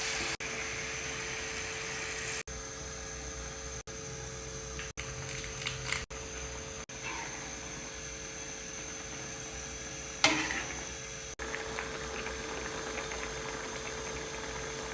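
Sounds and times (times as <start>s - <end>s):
food sizzling in a pan: 0.0s - 2.4s, 9.6s - 14.9s.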